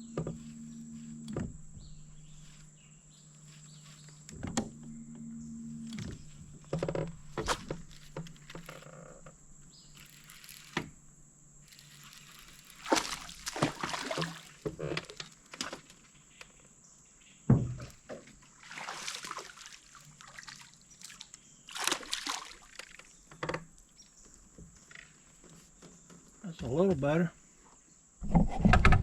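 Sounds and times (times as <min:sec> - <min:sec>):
dull thump: 0:00.0 - 0:02.9, 0:03.6 - 0:08.8, 0:17.5 - 0:18.3
water splashing and sloshing: 0:00.0 - 0:16.6, 0:17.5 - 0:25.7.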